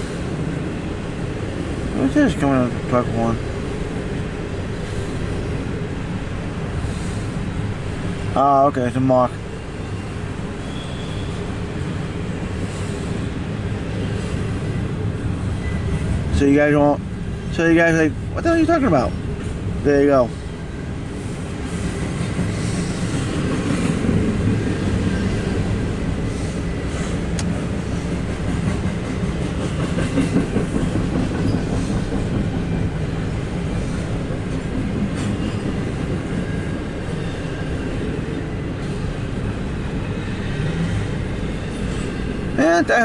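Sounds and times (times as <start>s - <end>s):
train wheels rumbling on rails: 0.0s - 43.0s
clickety-clack over rail joints: 21.6s - 39.5s.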